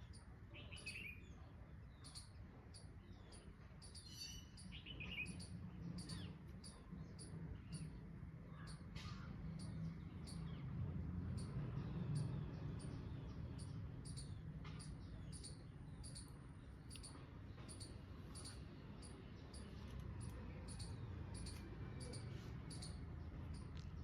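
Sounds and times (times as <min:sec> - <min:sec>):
small birds chirping: 0:00.0 - 0:24.0.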